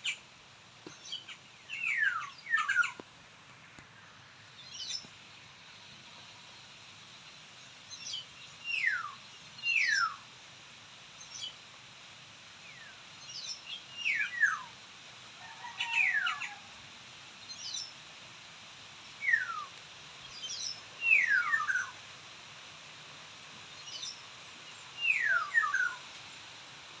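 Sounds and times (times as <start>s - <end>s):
bird calling falling whistles: 19.2s - 19.7s, 21.0s - 21.9s, 25.0s - 26.0s.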